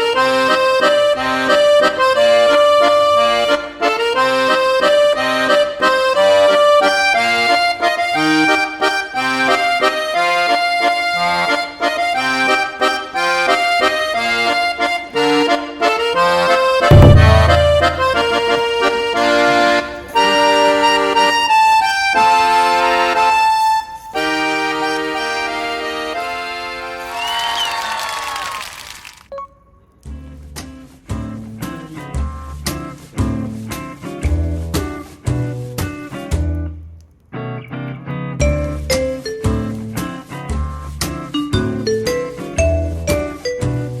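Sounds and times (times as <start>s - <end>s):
accordion playing bouncy melody: 0.0s - 27.2s, 41.3s - 44.0s
deep boom: 16.9s - 18.4s.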